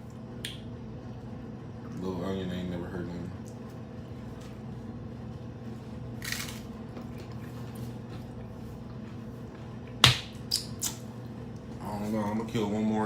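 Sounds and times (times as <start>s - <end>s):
low electrical hum: 0.0s - 13.0s
sharp taco crunch: 6.2s - 7.0s
soft chewing: 6.8s - 9.9s
wet mouth smack: 10.5s - 11.0s.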